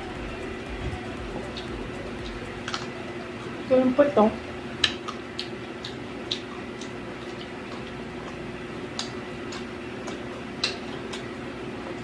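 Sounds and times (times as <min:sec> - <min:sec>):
steady low hum: 0:00.0 - 0:12.0
crisp mouth clicks and smacks: 0:01.6 - 0:02.9, 0:04.8 - 0:11.3.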